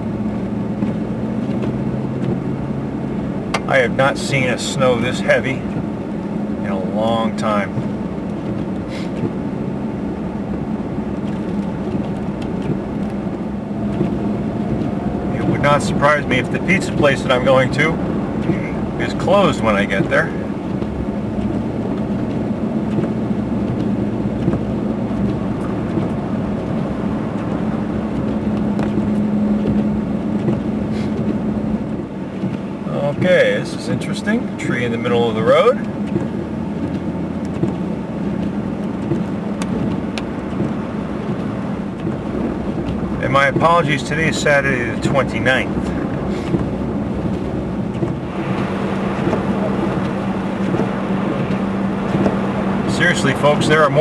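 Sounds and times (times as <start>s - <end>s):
car engine hum: 0.0s - 54.0s
tyre and road noise: 0.0s - 54.0s.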